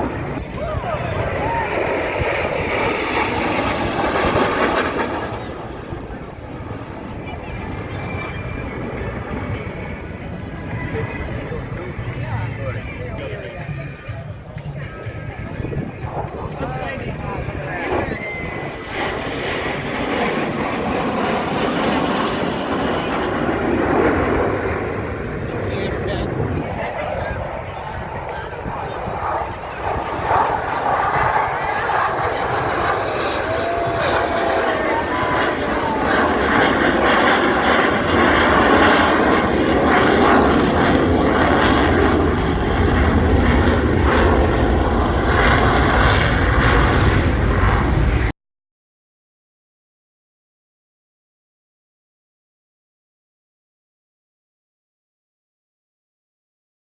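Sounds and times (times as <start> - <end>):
airplane flying past: 0.0 - 48.3.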